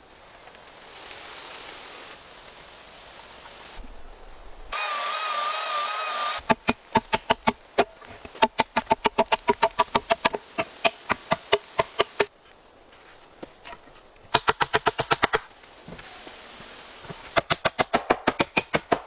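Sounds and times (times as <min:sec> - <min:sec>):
rapid sharp knocks: 0:08.4 - 0:12.3.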